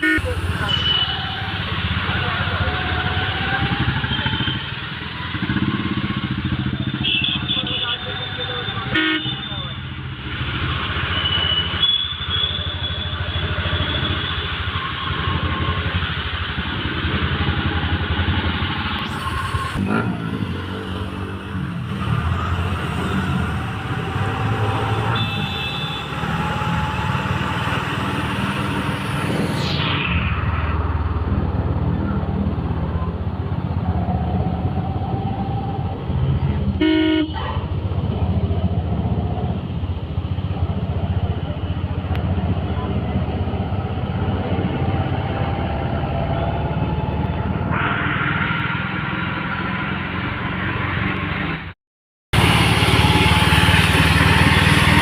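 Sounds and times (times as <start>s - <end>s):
car horns tooting: 0.0s - 1.2s, 6.9s - 9.8s, 25.0s - 26.4s, 36.8s - 37.4s
motorbikes and cars passing: 0.0s - 51.8s, 52.4s - 55.0s.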